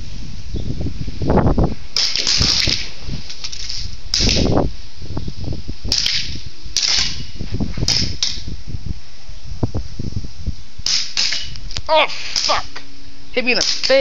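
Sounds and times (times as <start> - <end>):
airsoft gun shots: 2.0 - 2.9, 5.9 - 8.4, 10.8 - 11.6, 12.2 - 12.7, 13.6 - 14.0.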